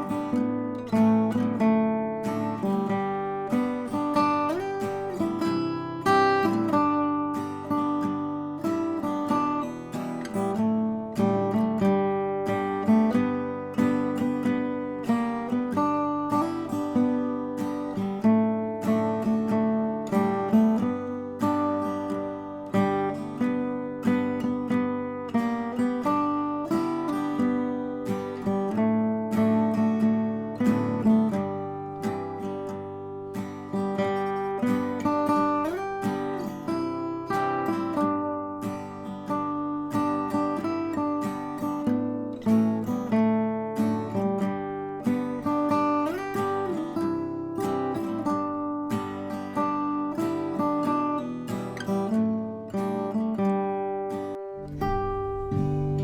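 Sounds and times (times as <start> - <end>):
acoustic guitar picking and strumming: 0.0 - 56.0
plucked string music: 0.0 - 56.0.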